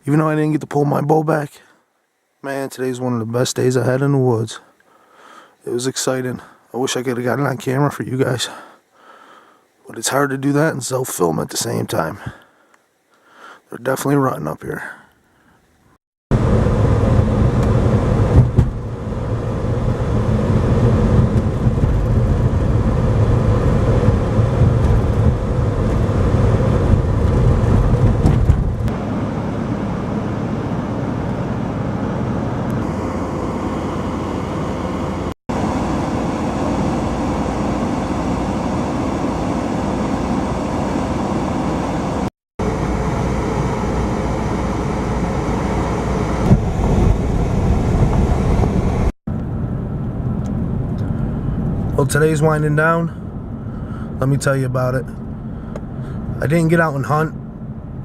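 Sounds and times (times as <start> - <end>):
vehicle engine: 16.3 - 52.2
road noise: 16.3 - 58.0.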